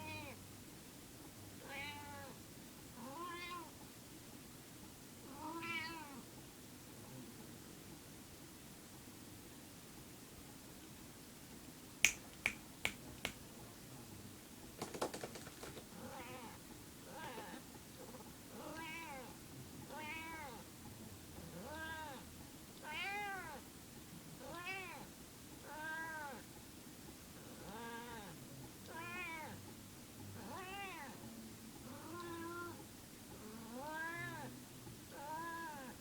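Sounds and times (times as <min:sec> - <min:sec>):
cat meowing: 0:01.6 - 0:02.3, 0:03.0 - 0:03.7, 0:05.3 - 0:06.2, 0:18.6 - 0:19.3, 0:19.9 - 0:20.6, 0:21.6 - 0:22.2, 0:22.8 - 0:23.6, 0:24.4 - 0:25.1, 0:25.7 - 0:26.4, 0:28.9 - 0:29.6, 0:30.4 - 0:31.1, 0:33.7 - 0:34.5, 0:35.2 - 0:35.9.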